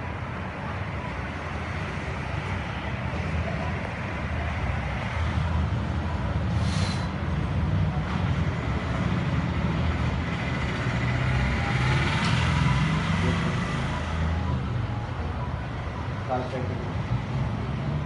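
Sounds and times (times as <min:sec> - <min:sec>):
brief hiss: 0:06.5 - 0:07.1.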